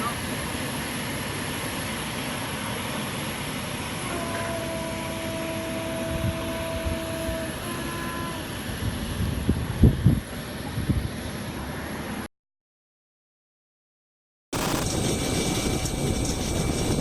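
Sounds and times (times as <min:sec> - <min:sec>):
aircraft engine noise: 0:00.0 - 0:12.3, 0:14.6 - 0:17.0
whine-like tone: 0:14.6 - 0:17.0.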